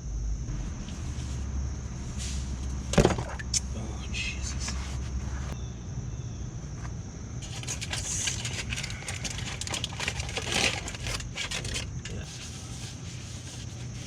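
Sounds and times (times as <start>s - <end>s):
low hum: 0.0s - 14.0s
tools clinking and scraping: 7.4s - 12.3s.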